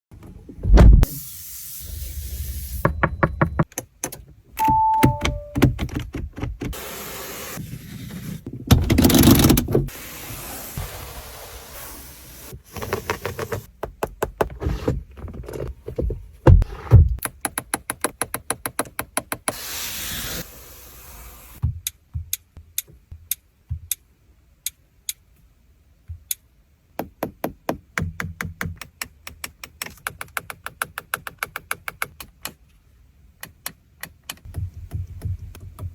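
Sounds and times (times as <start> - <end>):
knocks and thunks: 0.5 - 1.1, 15.5 - 17.2
two-note electronic chime: 4.6 - 5.6.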